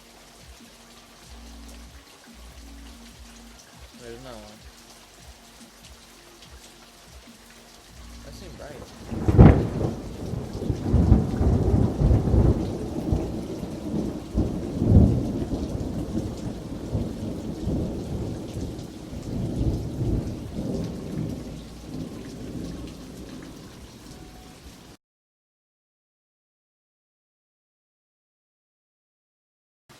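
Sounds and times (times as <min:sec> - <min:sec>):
rain falling: 0:00.0 - 0:25.0
rolling thunder rumble: 0:08.0 - 0:24.6
thunder crack: 0:08.3 - 0:23.8.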